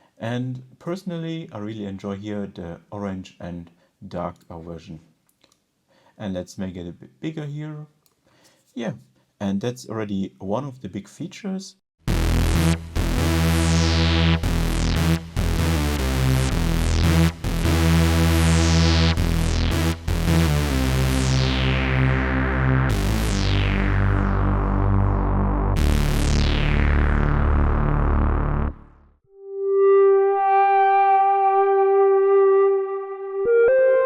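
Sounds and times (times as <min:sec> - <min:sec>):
buzzy synthesizer filter sweeps: 0:12.1 - 0:34.0.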